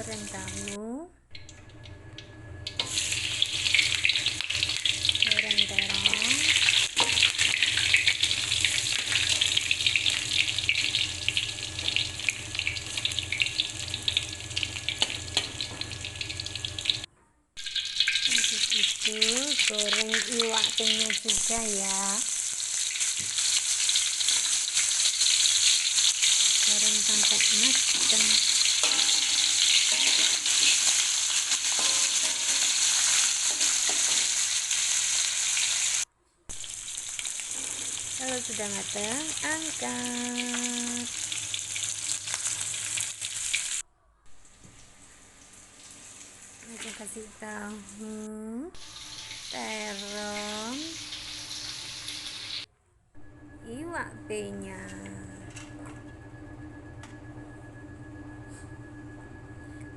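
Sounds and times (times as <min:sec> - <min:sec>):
low steady hum: 0:00.0 - 0:21.9, 0:43.8 - 0:59.9
food frying in hot oil: 0:02.7 - 0:43.8, 0:48.8 - 0:52.7.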